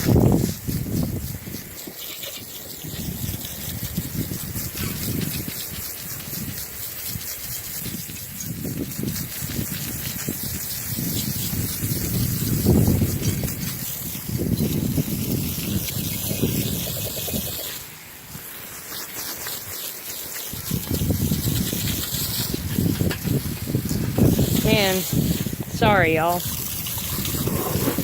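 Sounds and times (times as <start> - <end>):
hose spraying water on metal: 0.0 - 28.0.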